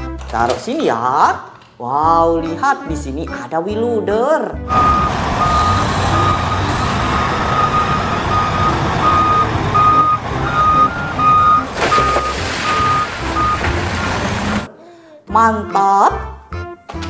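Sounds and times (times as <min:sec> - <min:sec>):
toy reversing beeps: 0:04.7 - 0:13.6
recorded engine rumble: 0:04.7 - 0:14.7.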